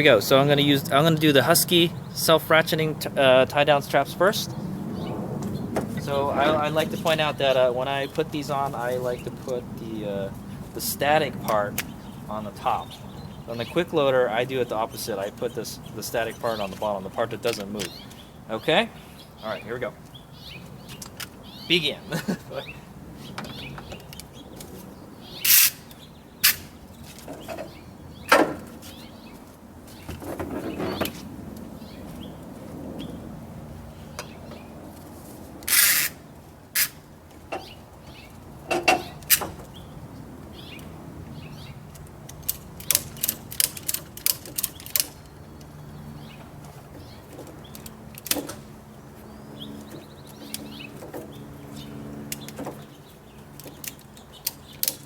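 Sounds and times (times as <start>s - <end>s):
quick ratchet clicks: 25.4s - 26.7s, 35.6s - 36.2s, 36.8s - 37.0s
strap clicks and snaps: 25.4s - 26.7s, 41.9s - 45.7s.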